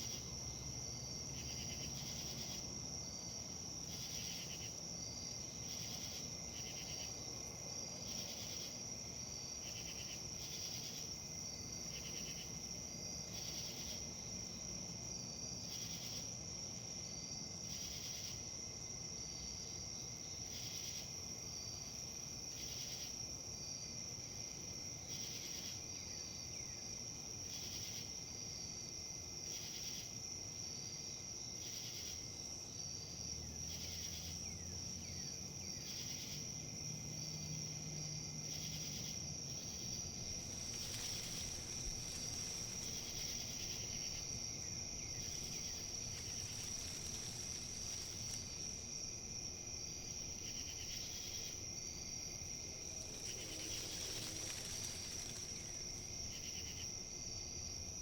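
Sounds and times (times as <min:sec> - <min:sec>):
insects trilling: 0:00.0 - 0:58.0
wind rustling leaves: 0:36.4 - 0:58.0
pulsed insect chirp: 0:38.1 - 0:58.0.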